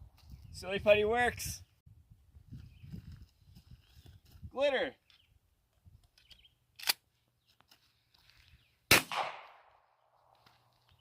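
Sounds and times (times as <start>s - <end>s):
shotgun report with echo: 8.9s - 9.9s.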